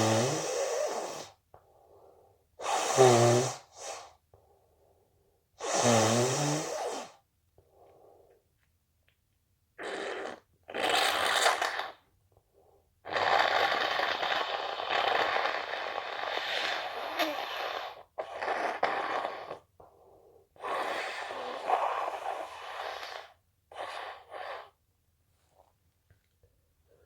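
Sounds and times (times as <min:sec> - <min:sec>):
person blowing nose: 0:00.0 - 0:01.4, 0:02.6 - 0:04.2, 0:05.6 - 0:07.2, 0:09.8 - 0:12.1, 0:13.0 - 0:19.7, 0:20.6 - 0:24.8.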